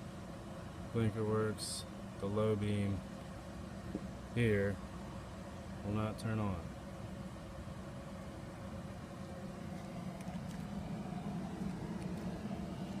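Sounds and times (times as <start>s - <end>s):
car engine idling: 6.5s - 13.0s.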